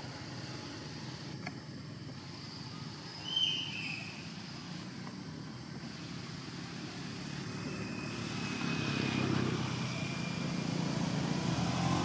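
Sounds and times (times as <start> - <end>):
engine running: 3.8 - 12.0.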